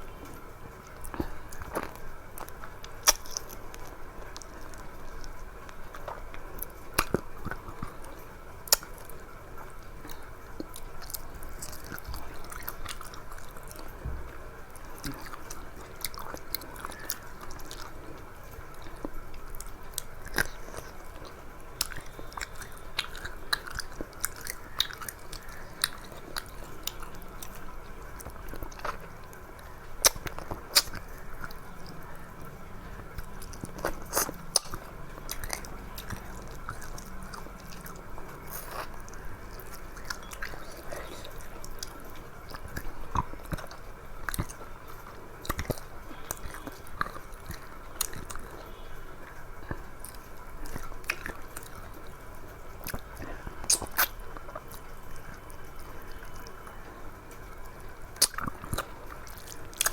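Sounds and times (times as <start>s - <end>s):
person chewing food: 0.0s - 59.9s
food crunch: 0.1s - 52.1s
wet mouth clicks and smacks: 53.6s - 54.7s.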